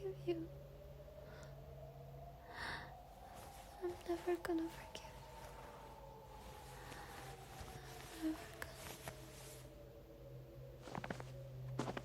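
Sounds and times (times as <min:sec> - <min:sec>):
steady low hum: 0:00.0 - 0:12.0
footsteps: 0:10.8 - 0:12.0.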